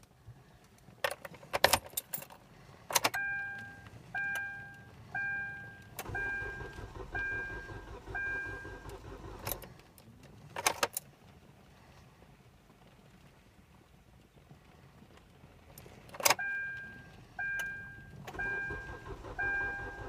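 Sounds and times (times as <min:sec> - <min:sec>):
keys jangling in ignition: 0:01.1 - 0:03.2, 0:05.8 - 0:09.7
dashboard warning chime: 0:03.2 - 0:09.6, 0:16.4 - 0:20.0
starter cranking: 0:06.0 - 0:09.8, 0:18.3 - 0:20.0.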